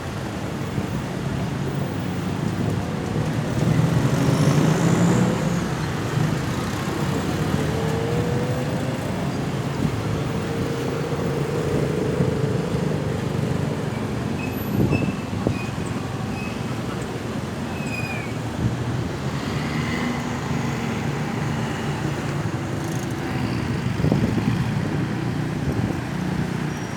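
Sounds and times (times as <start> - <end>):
road traffic noise: 0.0 - 26.9
brief high squeaks: 14.4 - 16.7, 17.7 - 18.4.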